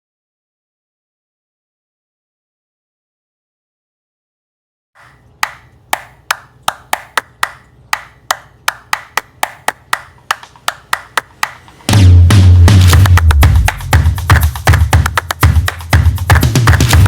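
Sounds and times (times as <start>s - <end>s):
sharp percussive clicks: 5.0s - 12.0s, 12.7s - 17.0s
low steady hum: 5.0s - 16.7s.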